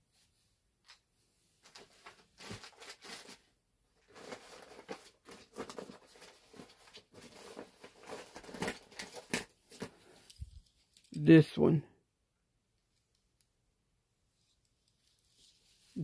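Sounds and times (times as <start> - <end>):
pocketknives clicking and rustling: 10.2 - 11.2.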